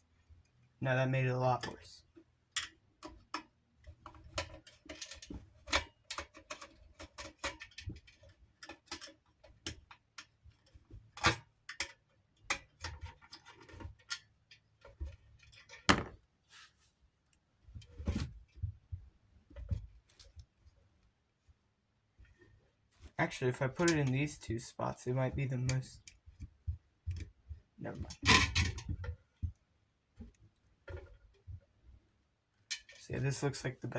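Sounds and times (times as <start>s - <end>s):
metal parts clicking and tapping: 2.5s - 16.2s, 23.0s - 24.5s, 28.0s - 29.6s, 32.6s - 33.6s.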